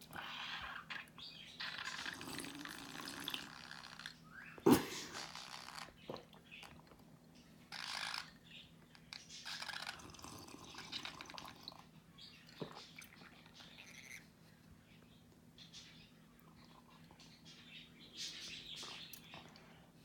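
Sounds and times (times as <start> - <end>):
wet slurping and gargling: 0.1 - 6.9, 9.5 - 11.9.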